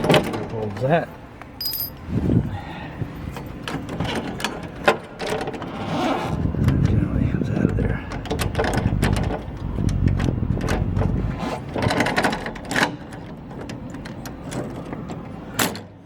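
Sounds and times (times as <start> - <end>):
metal latch parts clicking: 1.6 - 2.0.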